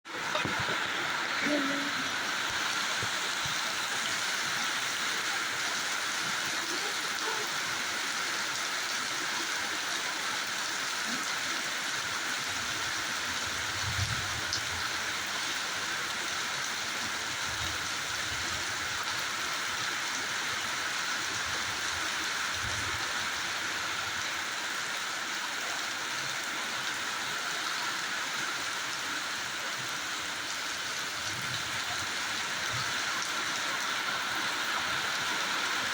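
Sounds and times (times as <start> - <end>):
steady rain hiss: 0.1 - 35.9.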